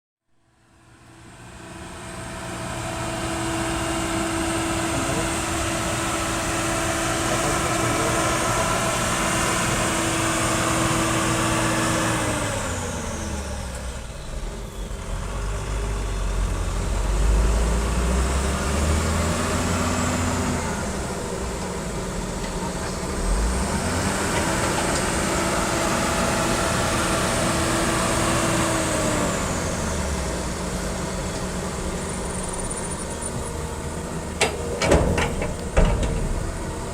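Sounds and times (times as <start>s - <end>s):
excavator engine and hydraulics whine: 0.4s - 36.9s
excavator knocks: 34.3s - 36.9s.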